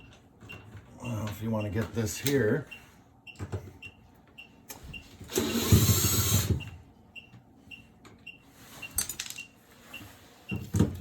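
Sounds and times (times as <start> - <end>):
cordless drill driving screw: 5.3 - 6.5.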